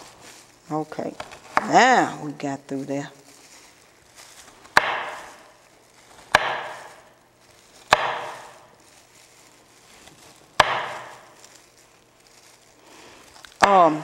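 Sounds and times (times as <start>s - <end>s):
knife chopping carrots on board: 4.7s - 5.3s, 6.3s - 7.0s, 7.9s - 8.6s, 10.6s - 11.2s.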